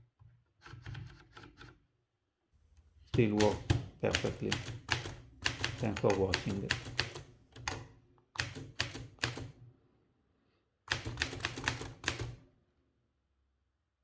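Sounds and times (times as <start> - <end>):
typewriter keys striking: 3.2 - 7.8, 10.9 - 12.3.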